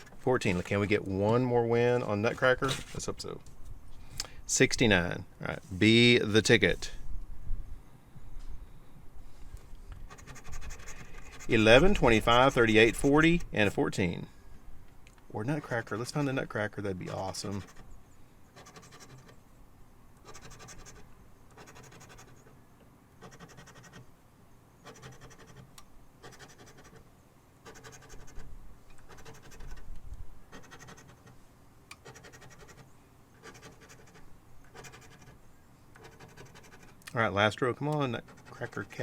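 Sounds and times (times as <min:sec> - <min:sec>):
scratching lottery ticket coating: 0:10.1 - 0:13.8, 0:15.4 - 0:17.9, 0:18.6 - 0:19.4, 0:20.2 - 0:22.5, 0:24.8 - 0:27.0, 0:27.6 - 0:29.9, 0:32.0 - 0:35.4, 0:36.0 - 0:37.0, 0:38.0 - 0:39.0.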